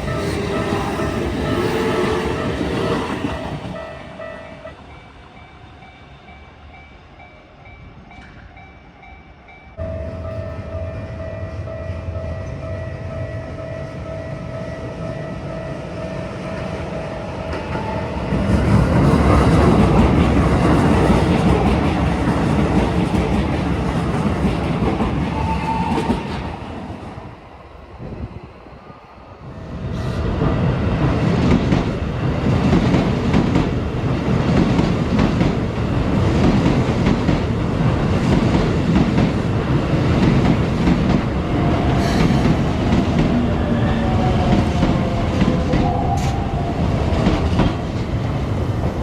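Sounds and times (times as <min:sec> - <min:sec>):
level-crossing warning bell: 0:00.0 - 0:19.1
electric train passing at speed: 0:00.0 - 0:49.0.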